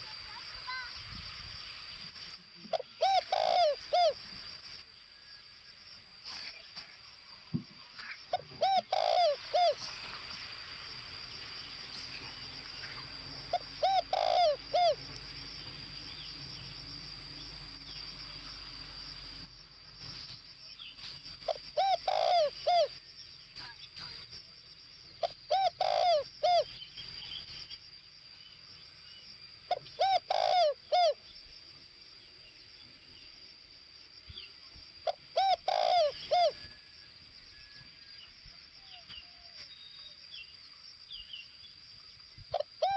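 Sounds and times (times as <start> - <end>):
dove cooing: 2.7 - 4.2, 8.3 - 9.9, 13.5 - 15.1, 21.5 - 23.0, 25.2 - 26.7, 29.7 - 31.2, 35.0 - 36.9, 42.5 - 42.9.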